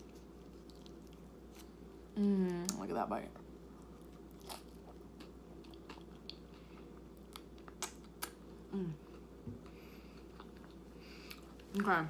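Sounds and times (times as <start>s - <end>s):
chewing chips: 0.1s - 1.8s
person humming: 2.2s - 2.8s, 8.7s - 9.0s.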